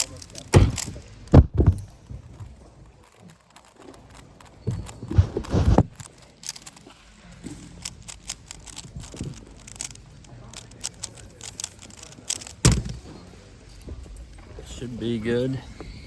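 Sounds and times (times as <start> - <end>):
puzzle cube clicking: 0.0 - 13.0
heavy thump: 0.6 - 2.0, 12.6 - 13.1.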